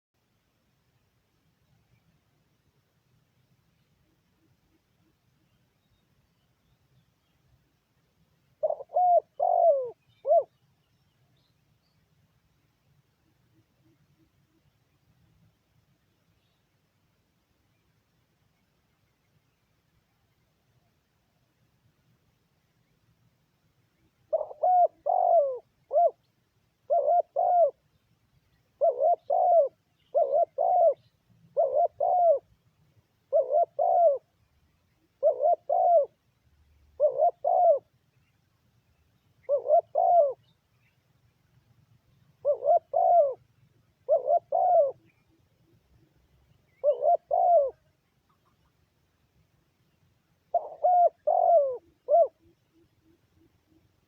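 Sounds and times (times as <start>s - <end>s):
dove cooing: 8.6s - 10.6s, 24.2s - 27.8s, 28.7s - 32.5s, 33.2s - 34.4s, 35.0s - 36.2s, 36.9s - 37.9s, 39.4s - 40.6s, 42.2s - 46.1s, 46.7s - 48.7s, 50.5s - 54.0s.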